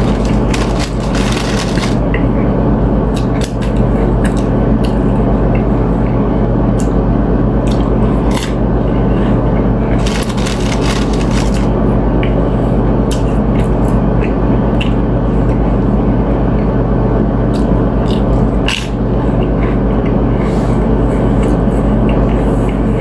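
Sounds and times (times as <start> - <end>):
sharp crunches of chips: 0.0 - 2.0, 10.0 - 11.7
steady low hum: 0.0 - 23.0.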